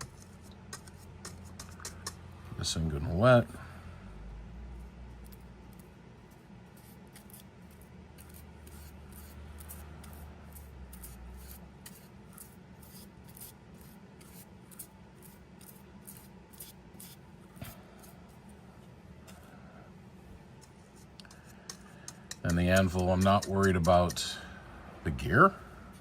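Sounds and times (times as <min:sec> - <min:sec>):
brush scrubbing on metal: 0:00.0 - 0:02.2, 0:05.2 - 0:18.5, 0:20.6 - 0:24.4.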